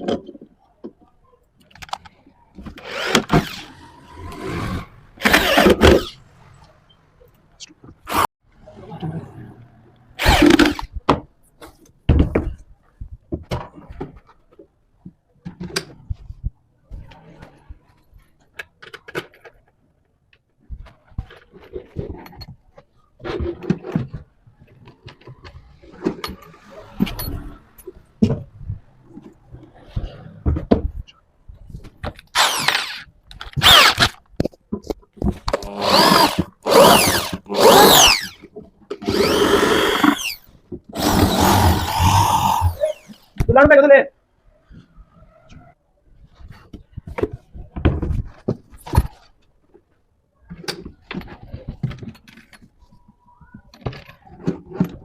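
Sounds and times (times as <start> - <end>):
power drill whirring: 2.8 - 6.1, 10.2 - 10.8, 32.2 - 34.2, 35.6 - 38.4, 39.0 - 43.3.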